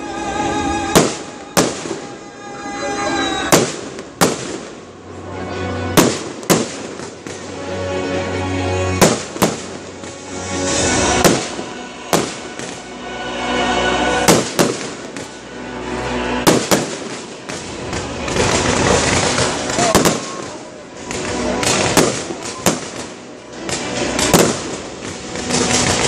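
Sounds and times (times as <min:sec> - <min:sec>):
fireworks crackling: 0:00.0 - 0:26.0
music with sustained notes: 0:00.0 - 0:26.0
firework shells bursting: 0:09.0 - 0:12.8, 0:14.2 - 0:15.4, 0:16.5 - 0:26.0.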